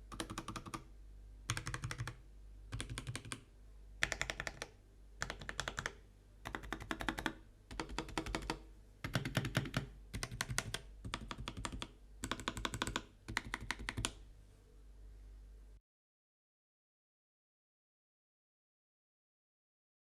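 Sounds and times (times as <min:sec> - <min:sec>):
faint low hum: 0:00.0 - 0:15.8
mechanical keyboard typing: 0:00.1 - 0:00.9, 0:01.5 - 0:03.4, 0:04.0 - 0:14.2.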